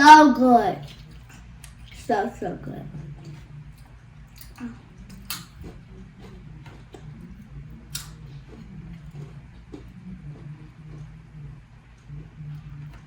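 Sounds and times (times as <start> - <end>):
low steady hum: 0.0 - 13.0
crackers crunching while chewed: 3.2 - 11.3.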